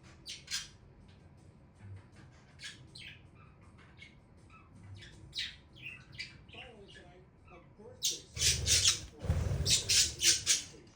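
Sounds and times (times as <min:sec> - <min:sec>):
budgerigars chirping: 0:08.0 - 0:10.7.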